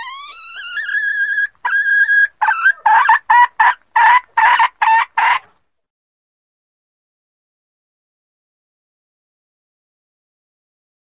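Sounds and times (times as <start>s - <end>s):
hen calling and clucking: 0.0s - 5.6s.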